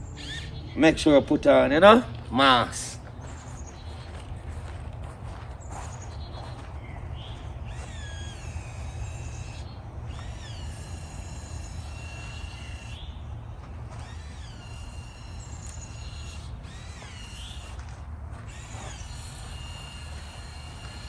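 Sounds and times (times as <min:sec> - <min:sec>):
birds whistling calls: 0:00.0 - 0:01.4, 0:05.6 - 0:21.0.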